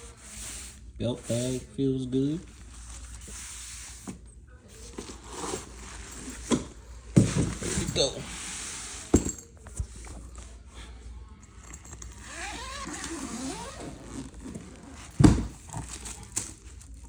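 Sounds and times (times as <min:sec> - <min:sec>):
bag rustling: 0:00.0 - 0:10.4, 0:11.5 - 0:17.0
bag zipper opening: 0:11.8 - 0:17.0.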